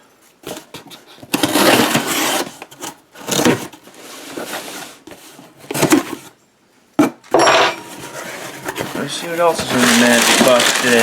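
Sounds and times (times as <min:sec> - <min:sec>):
cardboard box scraping and rubbing: 0:00.4 - 0:06.3, 0:07.8 - 0:11.0.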